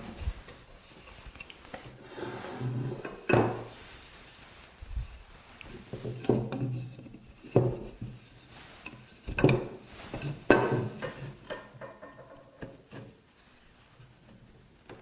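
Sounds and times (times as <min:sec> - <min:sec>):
wood rubbing and scraping: 0:00.0 - 0:12.5
wooden knocks: 0:03.0 - 0:03.7, 0:10.5 - 0:12.6.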